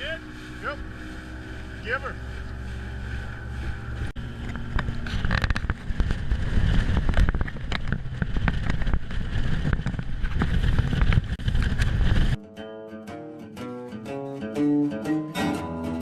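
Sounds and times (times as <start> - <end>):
boat running fast over water: 0.0 - 12.4
wind buffeting microphone: 0.0 - 12.4
sharp thumps and crackles: 0.3 - 12.4.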